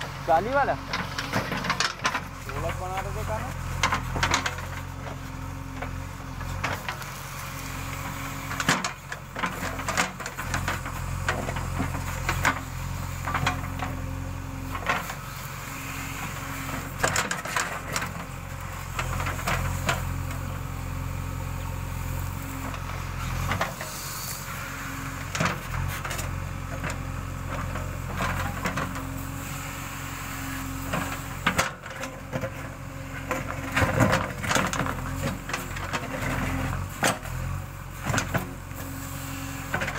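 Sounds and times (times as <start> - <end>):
diesel engine running: 0.0 - 39.9
sharp knocks and clatter: 0.9 - 2.6, 3.8 - 5.2, 8.5 - 14.0.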